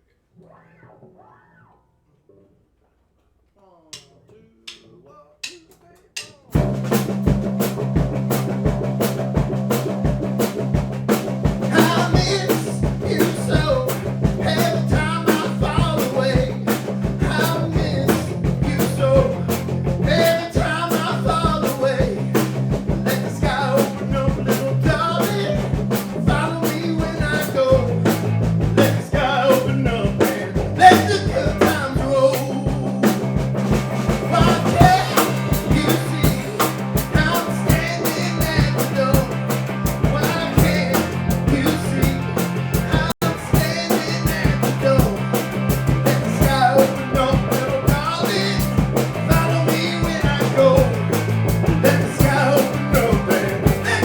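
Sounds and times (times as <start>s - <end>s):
rock band playing: 6.5s - 54.0s
lead vocal singing: 11.6s - 54.0s.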